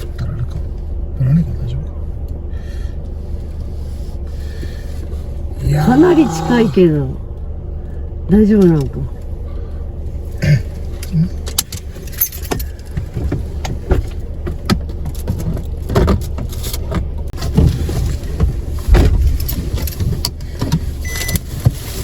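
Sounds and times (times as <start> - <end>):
rattles and knocks in car: 11.8 - 22.0.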